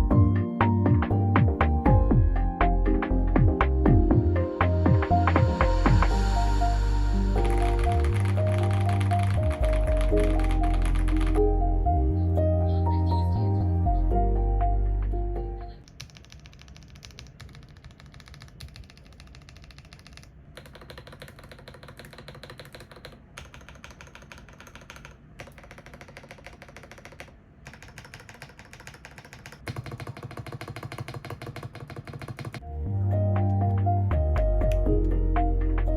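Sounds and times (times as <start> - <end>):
mechanical keyboard typing: 7.4 - 11.4, 15.8 - 32.6.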